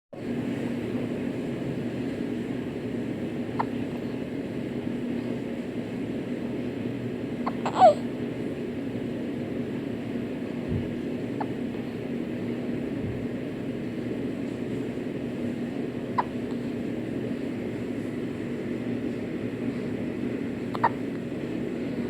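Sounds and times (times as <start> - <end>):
steady low hum: 0.2 - 22.0
baby hiccuping: 16.2 - 16.4, 20.7 - 21.0.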